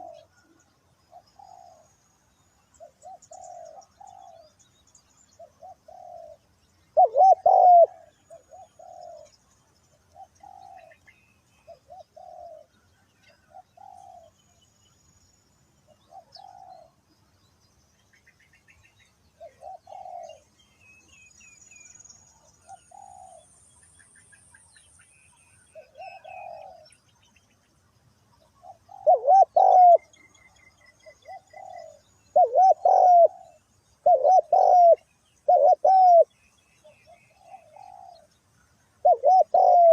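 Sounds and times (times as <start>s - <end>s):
doves cooing: 0.0s - 0.3s, 7.0s - 9.4s, 10.2s - 11.1s, 11.7s - 12.7s, 13.3s - 14.3s, 16.1s - 17.0s, 19.4s - 20.4s, 25.8s - 26.9s, 28.6s - 30.1s, 31.0s - 36.3s, 37.3s - 38.3s, 39.0s - 39.9s
small birds chirping: 0.0s - 39.9s.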